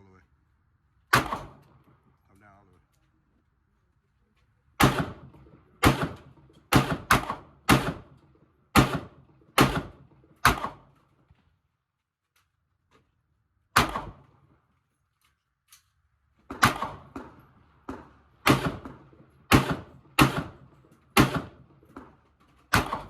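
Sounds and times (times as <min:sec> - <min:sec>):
handgun shots: 0:01.1 - 0:01.8, 0:04.8 - 0:05.2, 0:05.8 - 0:08.0, 0:08.8 - 0:11.0, 0:13.8 - 0:14.3, 0:16.5 - 0:22.1, 0:22.7 - 0:23.0.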